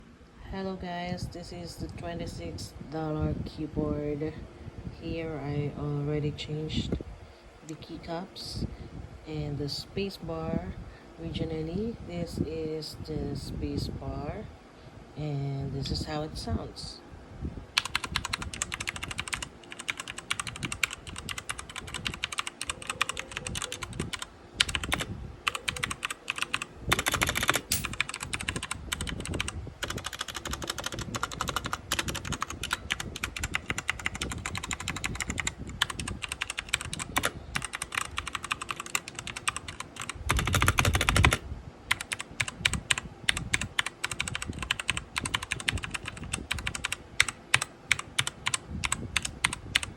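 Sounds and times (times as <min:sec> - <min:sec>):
keyboard clatter with low thud: 0:17.8 - 0:43.6.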